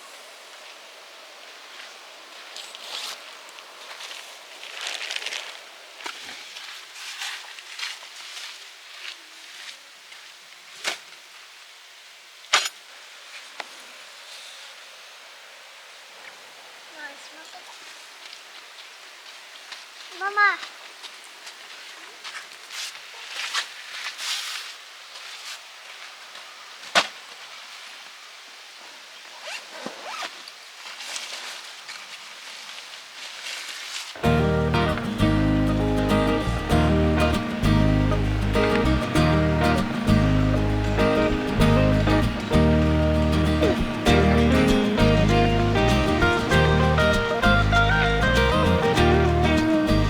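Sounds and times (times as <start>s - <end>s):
faint steady hiss: 0.0s - 50.0s
sliding high-pitched sounds: 34.2s - 50.0s.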